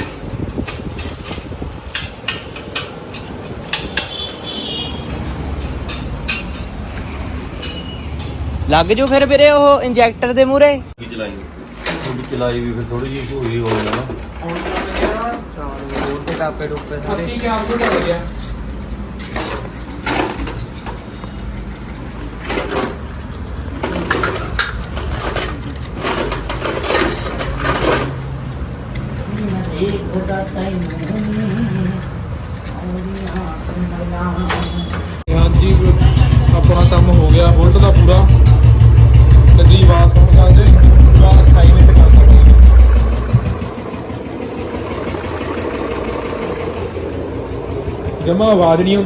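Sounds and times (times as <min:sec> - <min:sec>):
metal tools clinking: 0:00.0 - 0:09.4, 0:11.6 - 0:33.7
low rumble: 0:35.3 - 0:48.7
motorcycle engine idling: 0:35.3 - 0:49.0.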